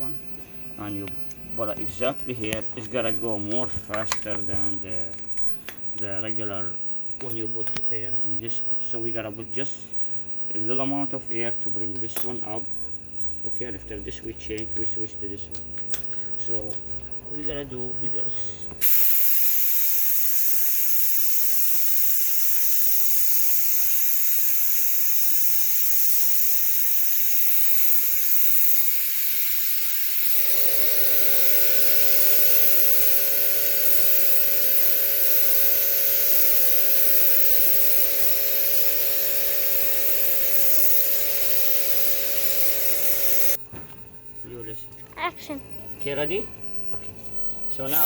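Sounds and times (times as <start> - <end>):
steady machine hum: 0.0 - 19.0, 23.9 - 48.0
compressed air hissing: 18.8 - 43.6, 46.7 - 48.0.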